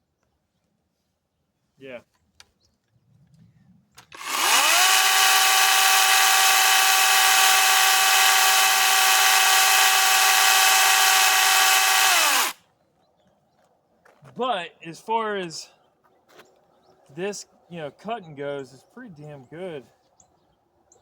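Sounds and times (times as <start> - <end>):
battery chainsaw whine: 4.1 - 12.6.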